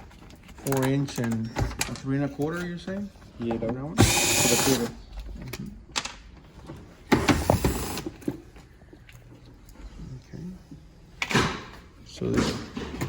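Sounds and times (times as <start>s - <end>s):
power drill running: 4.0s - 5.0s.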